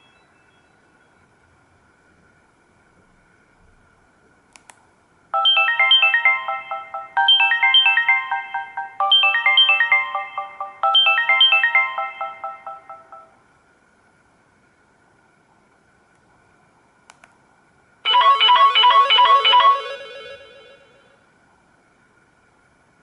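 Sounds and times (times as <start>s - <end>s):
single click: 4.5s - 4.8s
mobile phone ringtone: 5.4s - 13.4s, 18.1s - 21.2s.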